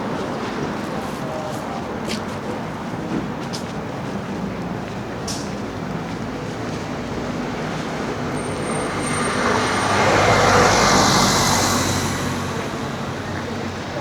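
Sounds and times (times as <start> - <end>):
low hum of engines: 2.6 - 14.0
vehicle passing close by: 6.3 - 14.0.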